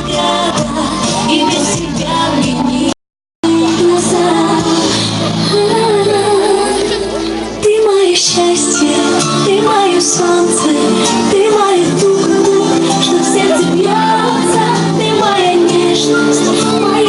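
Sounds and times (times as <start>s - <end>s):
person singing: 0.0s - 17.0s.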